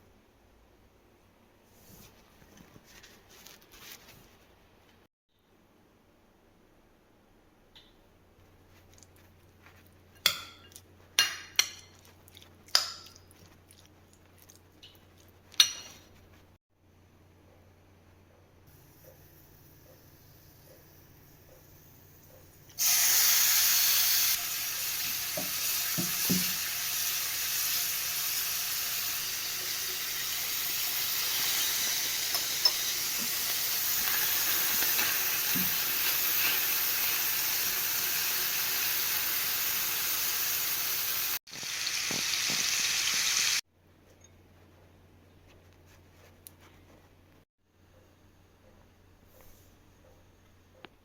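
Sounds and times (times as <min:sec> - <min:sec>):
food sizzling in a frying pan: 0:22.8 - 0:43.6.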